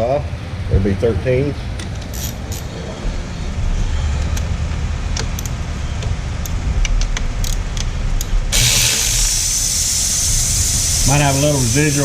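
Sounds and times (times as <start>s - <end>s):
steady low rumble: 0.0s - 12.0s
wrench clinking on metal fittings: 2.1s - 2.7s
refrigerant hissing: 8.5s - 12.0s.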